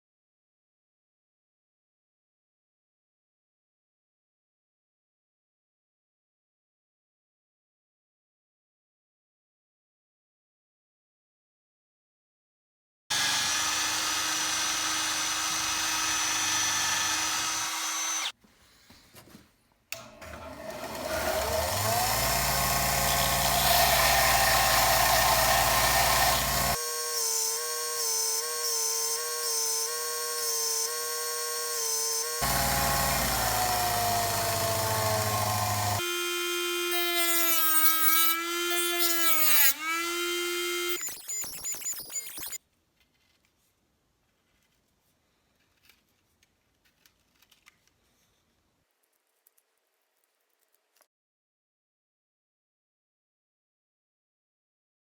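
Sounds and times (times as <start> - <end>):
power tool motor whining: 13.1 - 18.3, 20.0 - 42.6.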